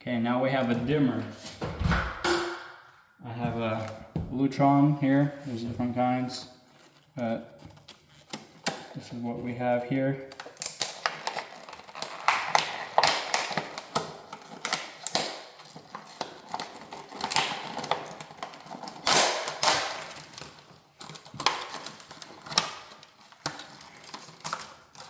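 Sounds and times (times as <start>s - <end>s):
packaging crinkling: 10.3s - 25.0s.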